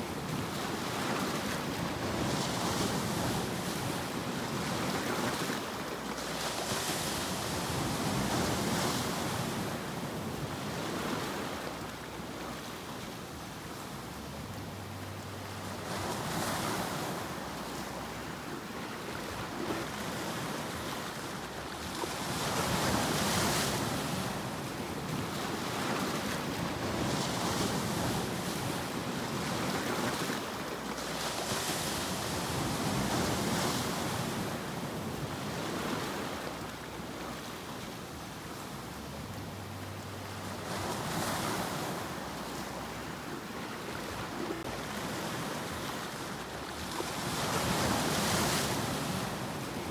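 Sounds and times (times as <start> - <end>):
ocean waves breaking: 15.2 - 49.9.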